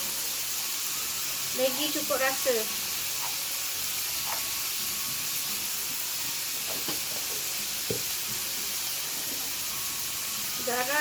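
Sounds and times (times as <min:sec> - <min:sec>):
rice sizzling in a hot pan: 0:00.0 - 0:11.0
light knocks on pan: 0:06.7 - 0:08.4.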